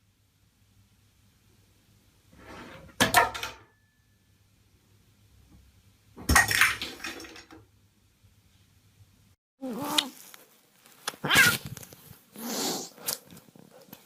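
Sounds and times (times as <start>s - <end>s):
hard objects crashing: 6.2s - 7.6s.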